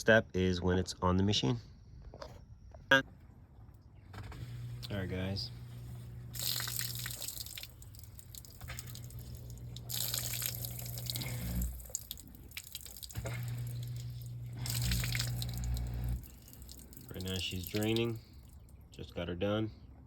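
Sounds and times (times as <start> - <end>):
drain pump humming: 4.3 - 19.0
water sloshing and dripping: 5.7 - 19.0.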